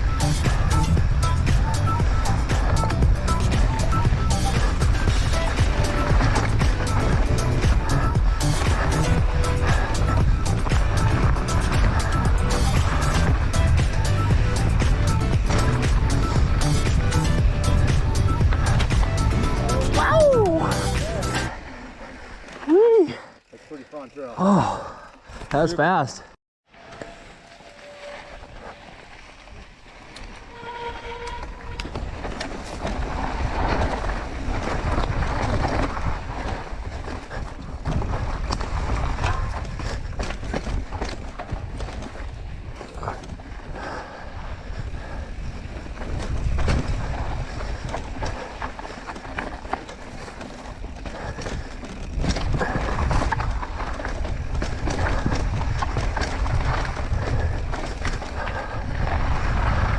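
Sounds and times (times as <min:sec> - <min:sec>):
bike tyre roar on dirt: 0:00.0 - 0:25.8, 0:26.7 - 0:59.9
bike rattling over bumps: 0:00.0 - 0:59.9
wind on microphone: 0:31.0 - 0:59.9.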